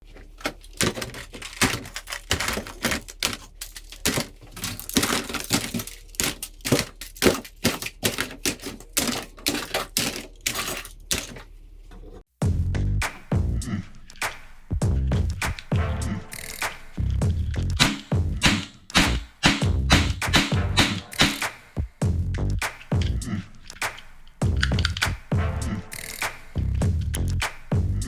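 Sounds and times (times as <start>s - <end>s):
plastic toy guns clicking: 0.4s - 11.4s, 17.7s - 21.6s, 22.6s - 25.3s, 25.9s - 27.5s
music with strong beat: 12.4s - 28.0s.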